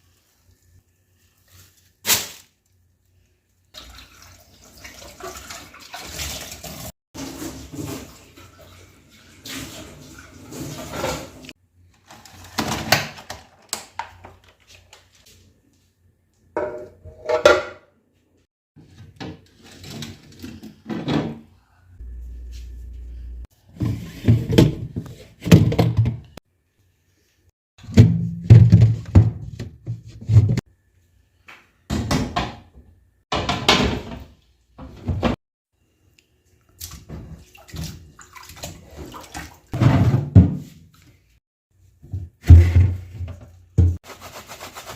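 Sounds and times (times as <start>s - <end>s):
washing sounds: 0.0s - 11.6s, 36.5s - 41.4s, 42.1s - 44.9s
kitchen knocks and clatters: 9.5s - 14.7s, 16.5s - 17.9s, 18.8s - 21.5s, 23.7s - 26.4s, 27.8s - 30.6s, 31.9s - 35.4s, 39.7s - 40.9s, 42.0s - 44.0s
brief low hum: 21.9s - 23.5s.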